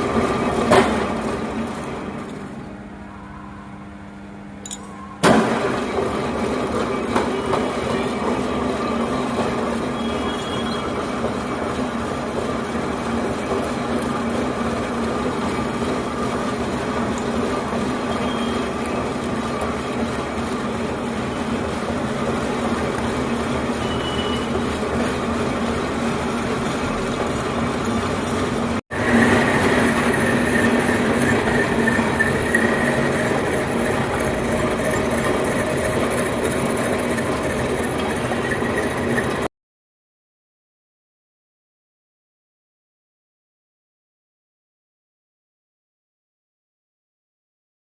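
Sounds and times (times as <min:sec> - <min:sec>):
metal boring machine running: 0:00.0 - 0:02.7, 0:05.3 - 0:39.5.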